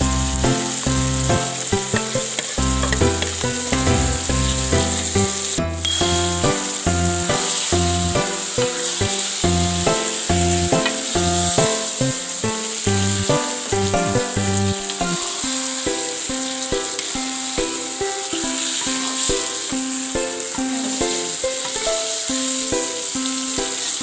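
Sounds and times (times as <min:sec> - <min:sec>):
background music with regular beat: 0:00.0 - 0:15.6
food sizzling in a pan: 0:00.0 - 0:24.0.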